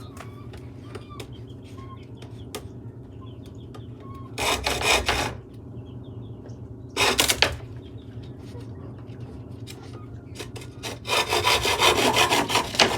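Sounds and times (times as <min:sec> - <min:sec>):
faint bird chirps: 0:00.0 - 0:04.4
hand saw cutting wood: 0:04.4 - 0:05.4, 0:07.0 - 0:07.6, 0:10.4 - 0:12.9.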